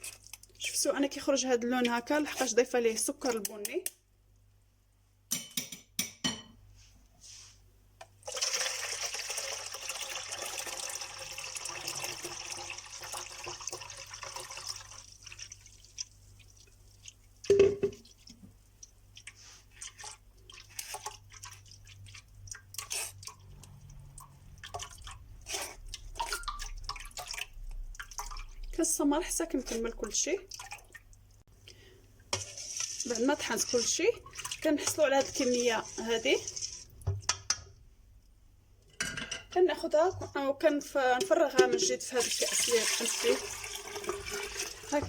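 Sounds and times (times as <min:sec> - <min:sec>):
liquid pouring: 0:08.2 - 0:18.3, 0:19.2 - 0:28.8, 0:30.4 - 0:31.2, 0:42.2 - 0:45.0
liquid dripping with clicks: 0:25.9 - 0:28.8.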